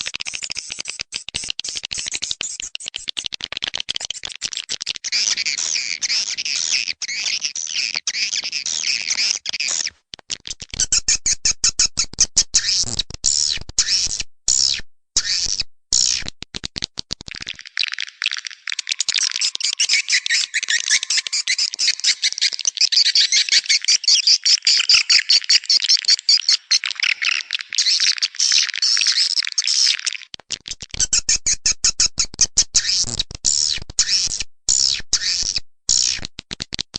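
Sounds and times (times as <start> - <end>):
swiftlets twittering: 18.7 - 29.0.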